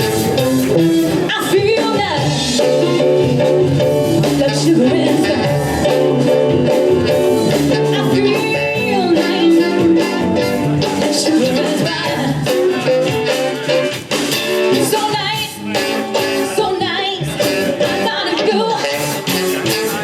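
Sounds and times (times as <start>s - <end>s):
live band playing soul music: 0.0s - 20.0s
person singing: 7.6s - 12.6s, 14.8s - 20.0s.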